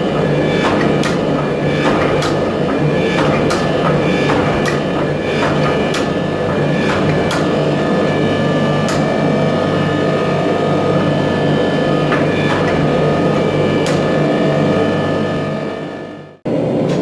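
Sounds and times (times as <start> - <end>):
sharp knocks: 0.0 - 8.2
machine humming: 0.0 - 17.0.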